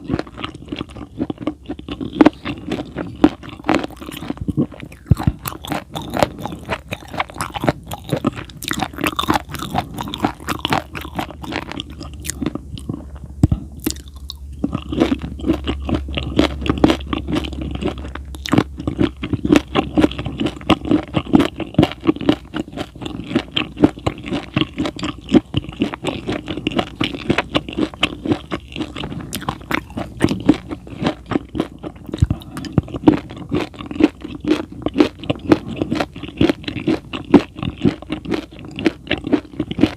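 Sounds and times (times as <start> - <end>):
close chewing and crunching: 0.0 - 39.9.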